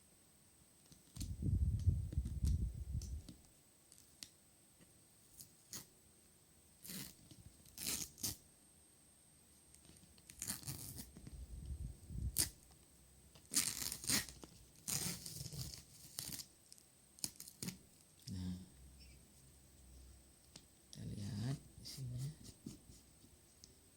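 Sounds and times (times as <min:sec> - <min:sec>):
packaging ripping: 0:13.5 - 0:16.4.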